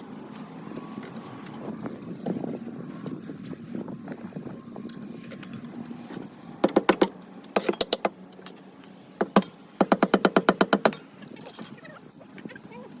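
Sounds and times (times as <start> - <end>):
hand tools knocking on steel: 6.6 - 8.2, 9.2 - 11.0.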